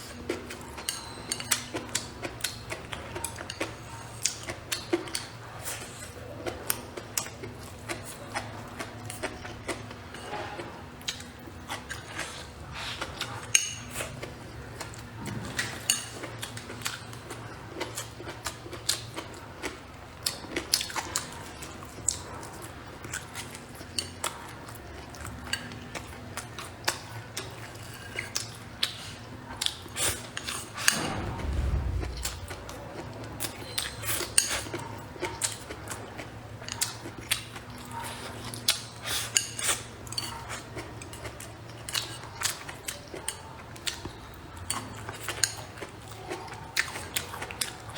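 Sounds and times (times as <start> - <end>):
brief low rumble: 30.9 - 33.4
low steady hum: 30.9 - 33.8.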